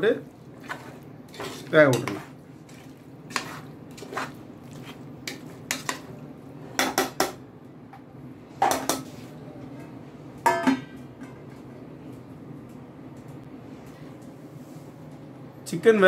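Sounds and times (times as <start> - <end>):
metal cookware clanking: 1.3 - 2.3, 10.4 - 11.4.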